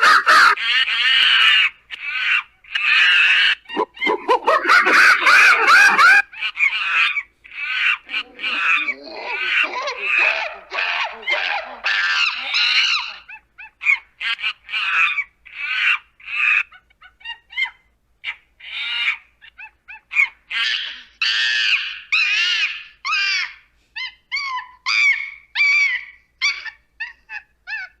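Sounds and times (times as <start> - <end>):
monkey screaming: 0.0 - 28.0.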